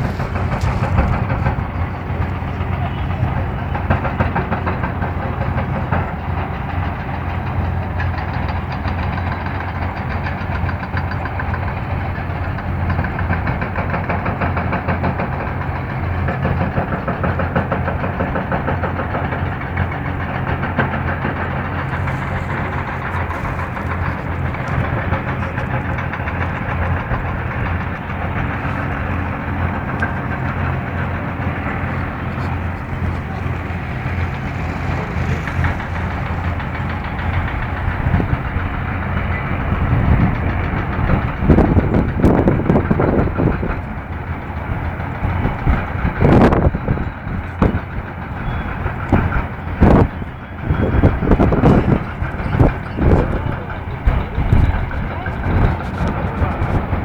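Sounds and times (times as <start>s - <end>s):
murmur of voices: 0.0s - 6.4s, 19.7s - 46.3s, 47.1s - 57.0s
machinery droning: 0.0s - 57.0s.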